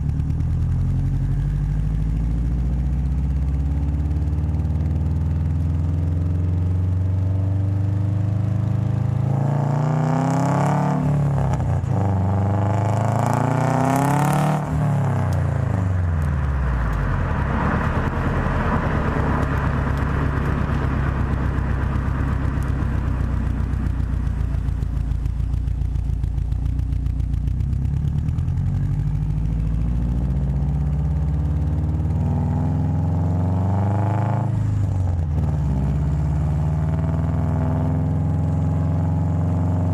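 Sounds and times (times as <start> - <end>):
car engine and exhaust revving: 0.0 - 39.9.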